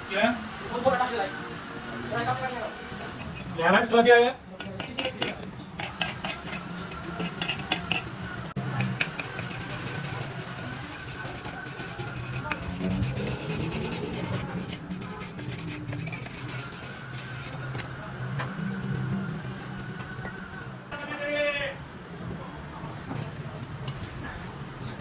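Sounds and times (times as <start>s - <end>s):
metal parts scraping and clinking: 4.6s - 20.6s, 23.1s - 25.0s
steady low hum: 5.6s - 21.0s.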